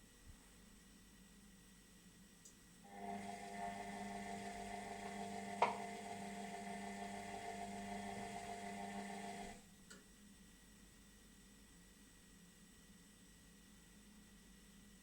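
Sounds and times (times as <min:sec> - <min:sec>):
washing machine motor whine: 0:02.9 - 0:09.6.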